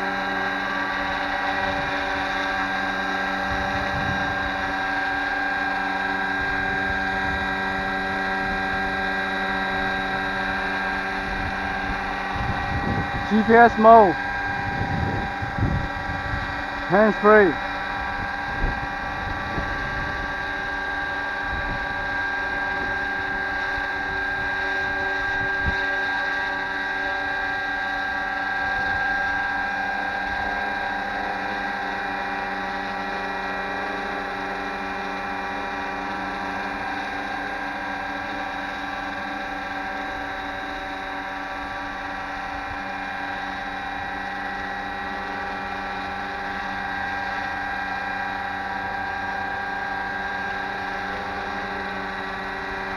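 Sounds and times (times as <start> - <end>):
model helicopter hovering whine: 0.0 - 52.9
wind rumble on microphone: 3.5 - 4.7, 11.2 - 13.3, 14.2 - 16.8.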